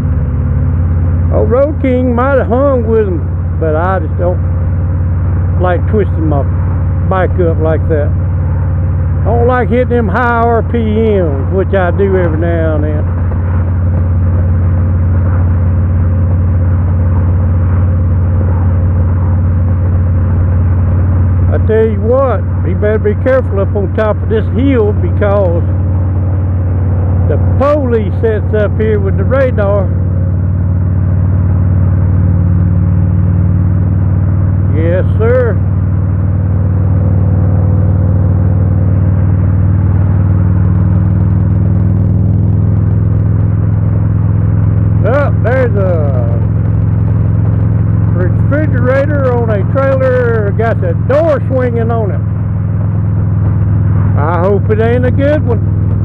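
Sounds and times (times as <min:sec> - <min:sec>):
motorcycle engine running steadily: 0:00.0 - 0:56.0.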